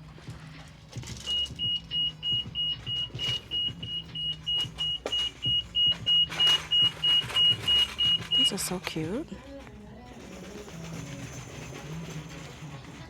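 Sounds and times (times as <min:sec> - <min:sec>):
rapid high-pitched electronic beeps: 0:01.3 - 0:08.6.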